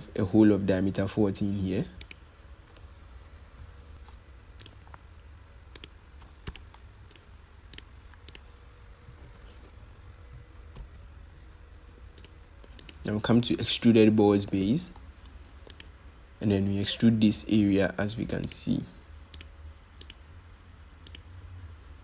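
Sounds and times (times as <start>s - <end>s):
low steady hum: 0.0s - 22.0s
computer input clicks: 19.3s - 20.2s.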